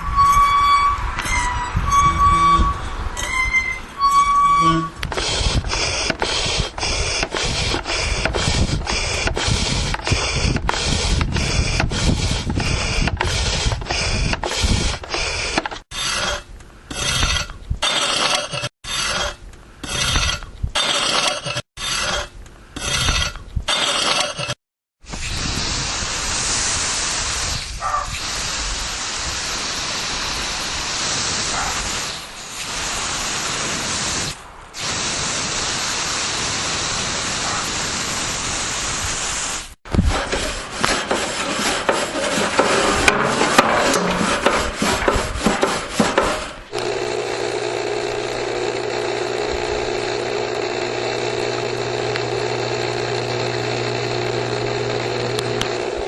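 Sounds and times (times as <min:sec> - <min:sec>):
clattering and scraping: 0:03.2 - 0:24.6, 0:39.9 - 0:46.7
steady hissing noise: 0:25.1 - 0:39.8.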